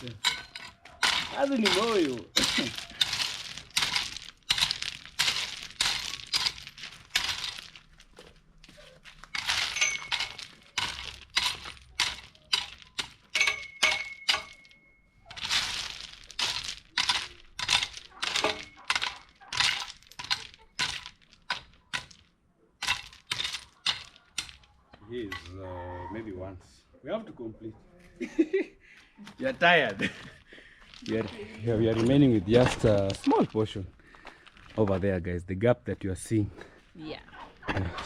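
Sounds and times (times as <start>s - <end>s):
stones crunching and clinking: 0.0s - 25.6s, 29.8s - 35.1s.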